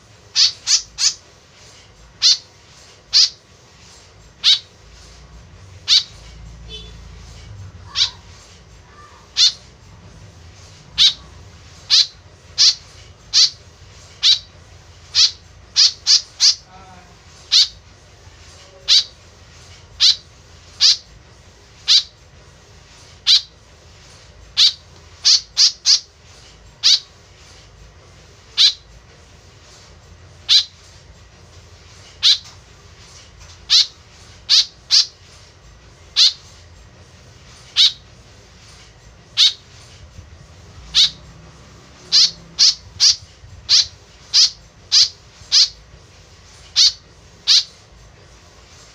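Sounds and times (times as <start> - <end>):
bird giving sharp high calls: 0.3 - 1.2, 2.2 - 2.5, 3.1 - 3.4, 4.4 - 4.8, 5.7 - 9.8, 10.5 - 16.7, 17.4 - 17.8, 18.8 - 19.2, 19.9 - 21.1, 21.8 - 22.2, 23.2 - 23.5, 24.5 - 26.1, 26.8 - 27.1, 28.5 - 28.9, 30.4 - 30.8, 32.2 - 32.5, 33.6 - 35.2, 36.1 - 36.5, 37.7 - 38.1, 39.2 - 39.9, 40.6 - 45.8, 46.7 - 47.8.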